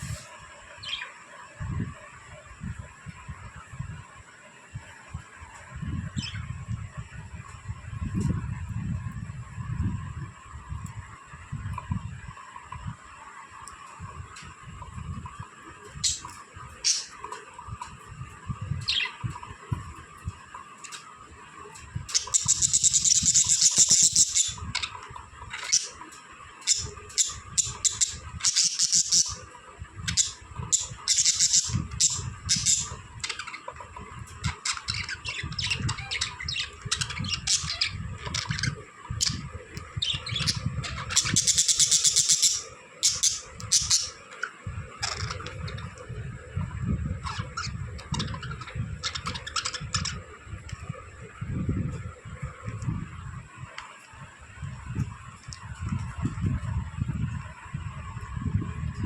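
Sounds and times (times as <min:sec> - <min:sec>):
budgerigars chirping: 0:16.0 - 0:17.1, 0:22.1 - 0:24.9, 0:26.6 - 0:29.4, 0:30.1 - 0:33.6, 0:34.4 - 0:39.4, 0:40.0 - 0:44.2.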